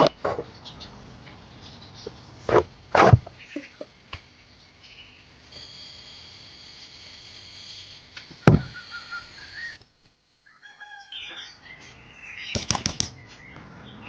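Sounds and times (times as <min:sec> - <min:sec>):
birds calling: 0:00.0 - 0:05.4, 0:10.6 - 0:14.0
quick run of clicks: 0:12.5 - 0:13.2.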